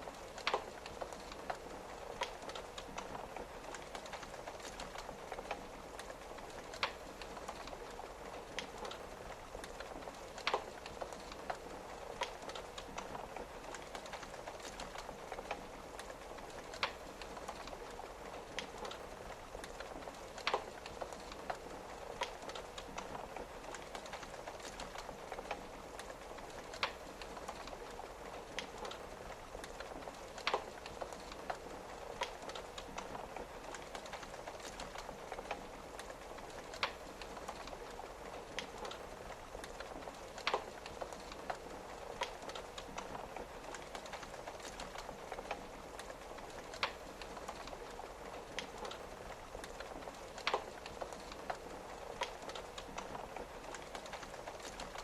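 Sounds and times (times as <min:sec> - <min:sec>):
rain pattering on a window: 0:00.0 - 0:55.0
wood fire crackling: 0:00.0 - 0:55.0.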